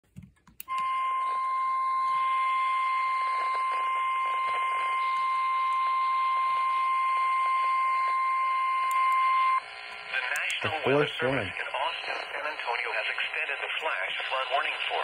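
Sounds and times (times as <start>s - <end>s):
steady high alarm beep: 0.7s - 9.6s
radio static hiss: 2.8s - 6.9s, 9.4s - 15.0s.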